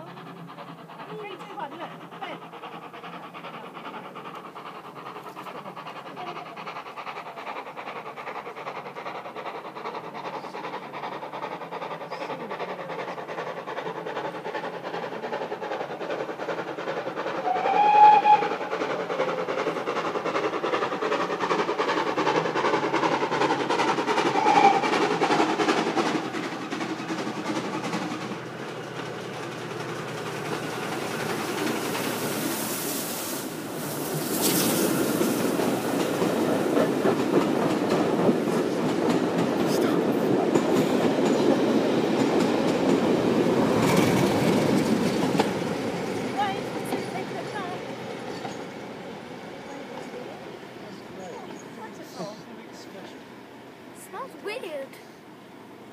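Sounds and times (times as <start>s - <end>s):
steam locomotive approaching: 0.0s - 55.9s
train whistle blasts: 17.4s - 18.5s, 24.4s - 24.9s.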